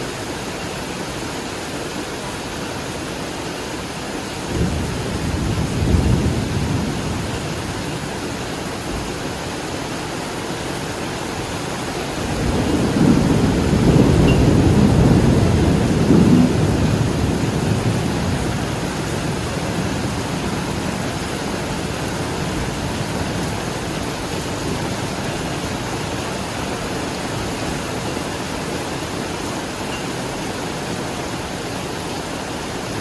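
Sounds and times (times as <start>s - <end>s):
heavy rain: 0.0s - 33.0s
thunder rumble: 4.5s - 8.2s, 12.2s - 25.9s.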